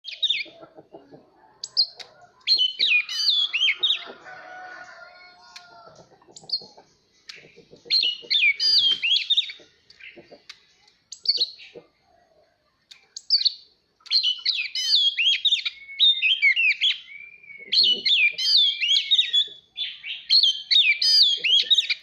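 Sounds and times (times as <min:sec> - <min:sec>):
quiet bird calls: 0:00.0 - 0:22.0
bird singing whistled phrases: 0:01.6 - 0:04.1, 0:08.0 - 0:09.6, 0:13.2 - 0:22.0.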